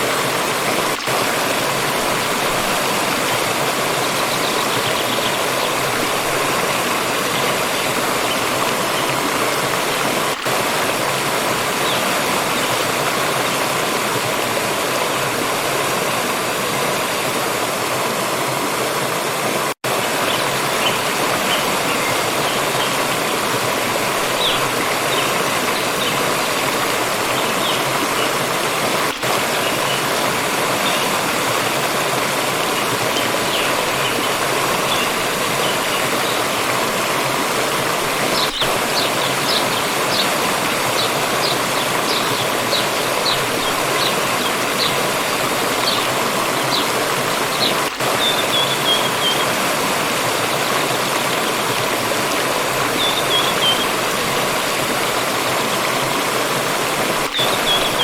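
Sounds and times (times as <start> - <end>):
water stream rushing: 0.0 - 58.0.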